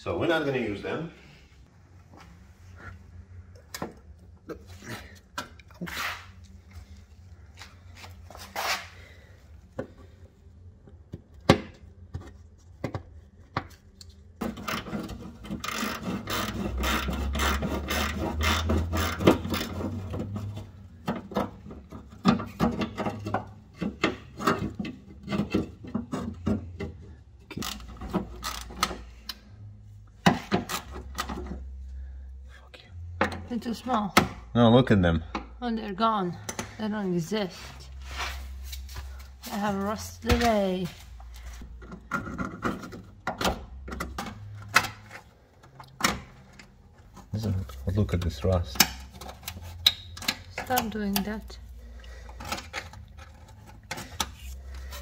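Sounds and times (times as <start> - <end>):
parts rubbing and scraping: 4.6 - 10.2, 12.1 - 29.2, 37.2 - 55.0.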